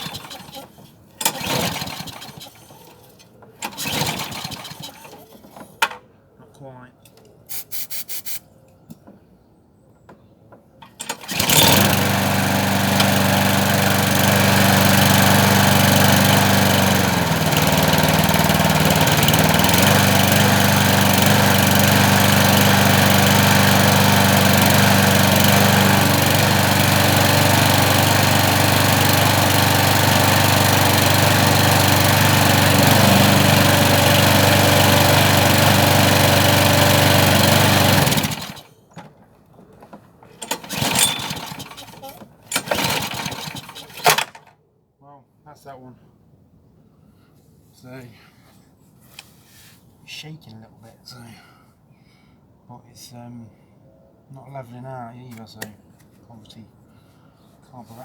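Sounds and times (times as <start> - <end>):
lawnmower engine running: 0.0 - 5.6, 10.8 - 39.2, 39.8 - 44.5
man talking: 6.4 - 7.0, 45.0 - 46.0, 47.8 - 48.3, 50.1 - 51.5, 52.7 - 53.6, 54.3 - 56.7, 57.7 - 58.0.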